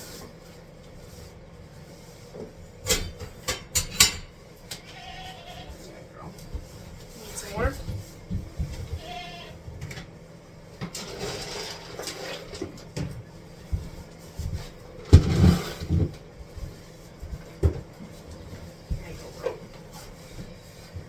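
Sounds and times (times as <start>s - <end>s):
goat bleating: 4.8s - 5.9s, 8.9s - 9.6s.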